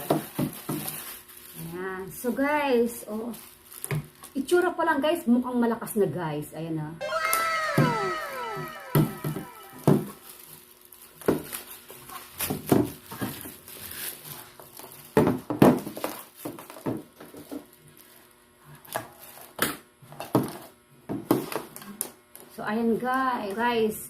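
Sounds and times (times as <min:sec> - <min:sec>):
plastic packaging crinkling: 0:00.0 - 0:01.8, 0:03.3 - 0:04.2.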